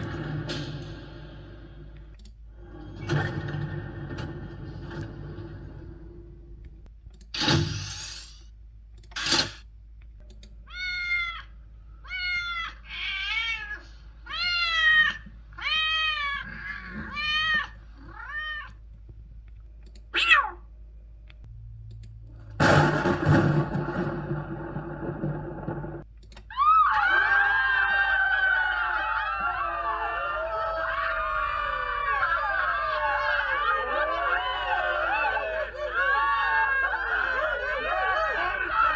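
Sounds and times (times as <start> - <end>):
cat meowing: 10.7 - 18.8, 20.2 - 20.7.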